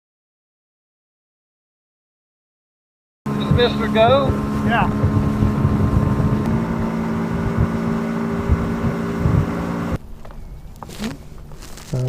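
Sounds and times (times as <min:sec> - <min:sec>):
water noise: 0:03.3 - 0:10.2
outboard motor running: 0:03.3 - 0:11.8
wind: 0:03.3 - 0:12.0.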